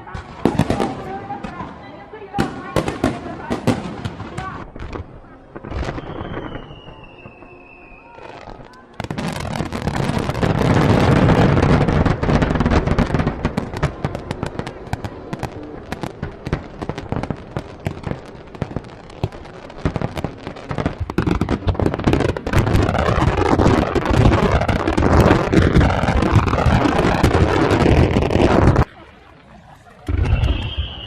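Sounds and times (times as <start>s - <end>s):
fireworks booming: 0.0s - 28.9s, 30.0s - 31.0s
fireworks crackling: 0.0s - 31.0s.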